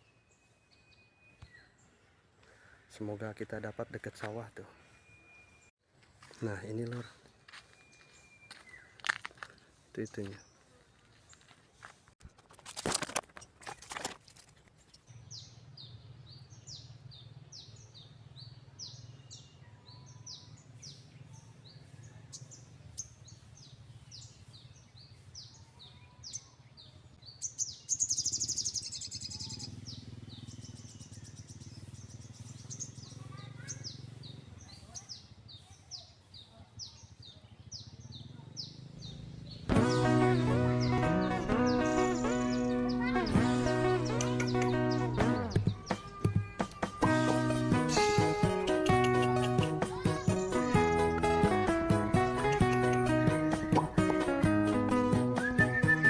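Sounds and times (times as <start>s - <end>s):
bird chirping: 0.0s - 2.1s, 14.9s - 56.0s.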